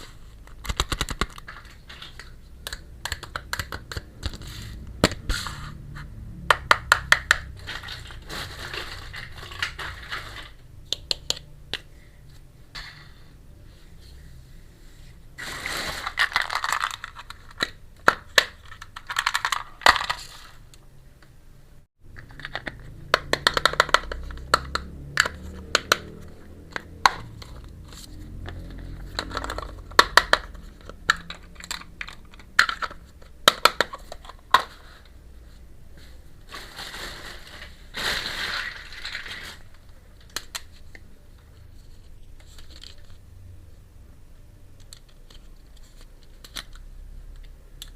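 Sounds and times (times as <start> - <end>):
packaging rustling: 7.6 - 10.6, 15.4 - 17.7, 36.4 - 40.9.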